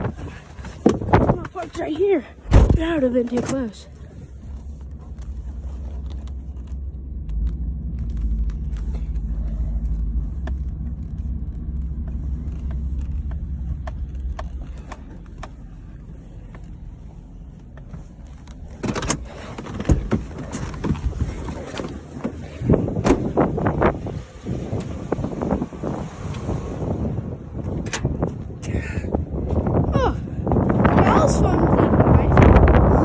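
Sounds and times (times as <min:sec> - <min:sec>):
vehicle engine rumbling: 0:00.0 - 0:33.0.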